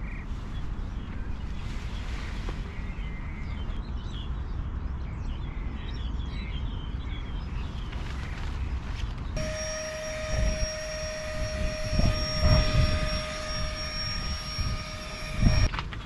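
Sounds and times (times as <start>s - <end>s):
wind rumbling on microphone: 0.0s - 16.0s
steady hum with hiss: 9.4s - 15.7s.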